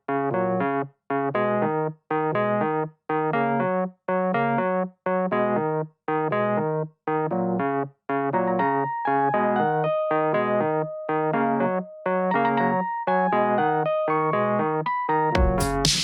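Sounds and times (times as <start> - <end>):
keyboard riff: 6.5 - 16.0.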